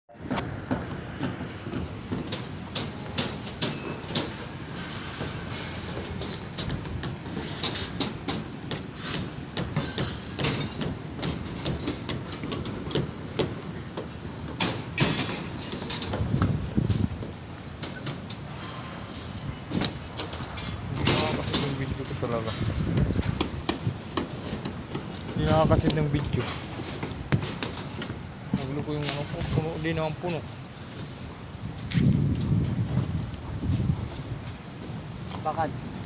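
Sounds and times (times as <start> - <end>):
metallic clanks of steel bars: 2.2 - 13.0, 13.7 - 17.0, 19.2 - 23.6.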